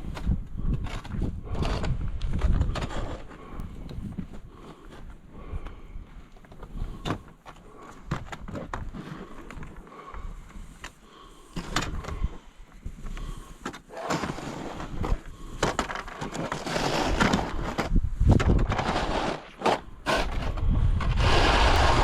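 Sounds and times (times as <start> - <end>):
scraping and crunching in snow: 12.8 - 22.0.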